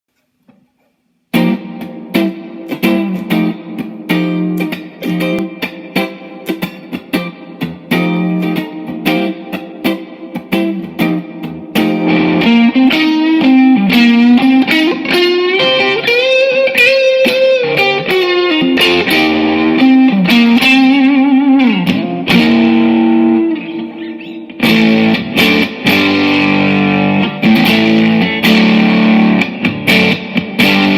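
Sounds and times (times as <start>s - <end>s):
guitar chords: 0.4s - 30.9s
electric guitar lead: 1.3s - 30.9s.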